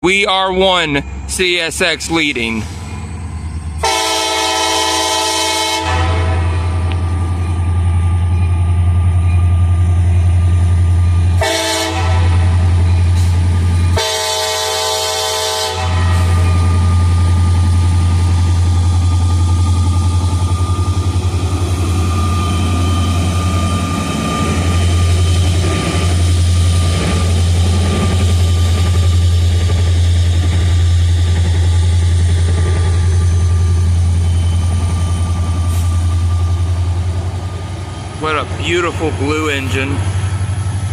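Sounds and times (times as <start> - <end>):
locomotive low drone: 0.0 - 40.9
diesel locomotive horn: 3.8 - 7.0, 11.0 - 18.7.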